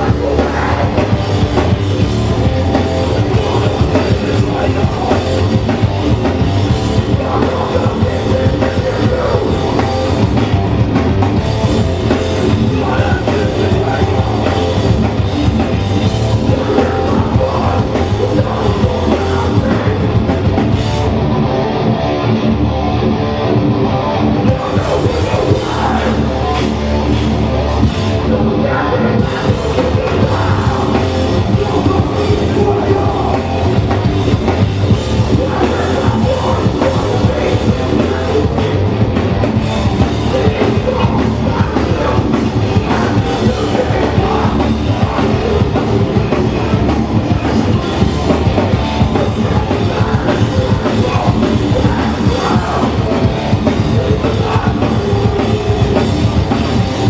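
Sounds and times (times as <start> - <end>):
pounding drum kit: 0.0 - 21.3, 24.1 - 57.0
bass guitar: 0.0 - 57.0
distorted guitars: 0.0 - 57.0
shouted vocals: 24.4 - 26.8, 28.2 - 39.1, 39.8 - 57.0.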